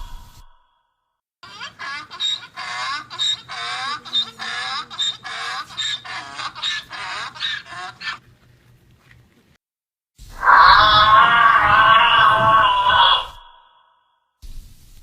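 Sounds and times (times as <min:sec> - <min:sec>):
giraffe calls: 0:01.5 - 0:08.4, 0:10.4 - 0:13.7.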